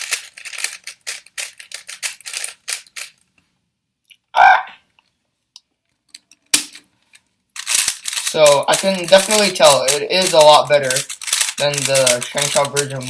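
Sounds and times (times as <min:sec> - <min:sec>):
puzzle cube plastic clicks: 0:00.0 - 0:03.3, 0:07.6 - 0:13.0.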